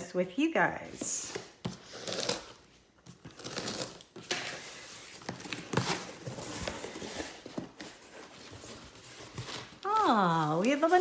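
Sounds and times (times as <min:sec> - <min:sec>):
cardboard box being handled: 0:03.1 - 0:11.0.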